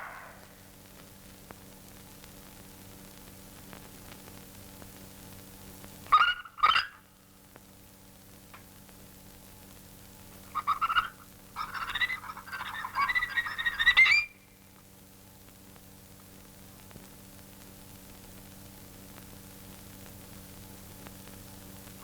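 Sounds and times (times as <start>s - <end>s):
faint hiss: 0.0s - 6.1s
steady low hum: 0.0s - 6.2s
high squeaky cartoon calls: 6.1s - 7.0s, 10.5s - 14.4s.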